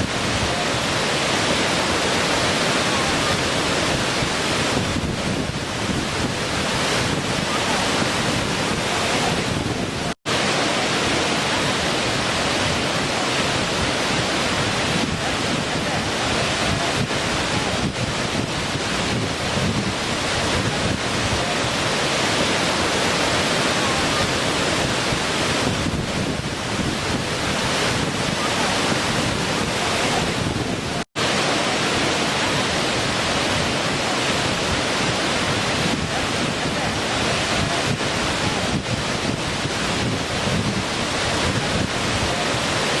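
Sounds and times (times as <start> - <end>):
small waterfall rushing: 0.0 - 43.0.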